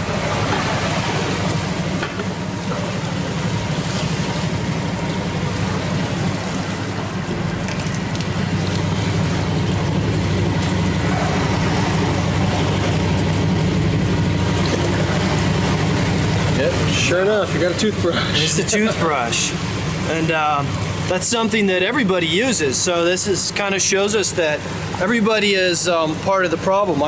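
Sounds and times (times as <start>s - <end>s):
boat engine humming: 0.0s - 27.0s.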